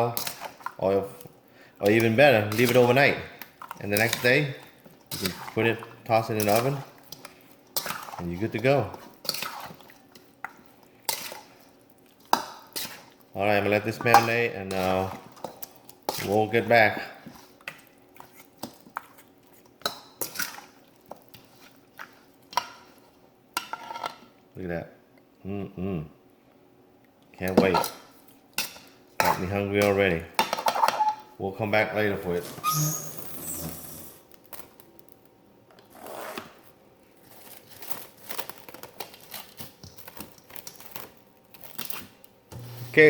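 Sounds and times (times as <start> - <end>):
rustling and crinkling: 33.2 - 42.9.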